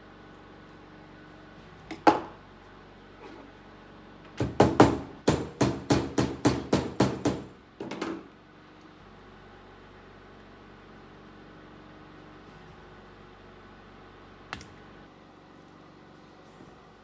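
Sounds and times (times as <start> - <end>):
small hammer striking silver: 14.5 - 14.8.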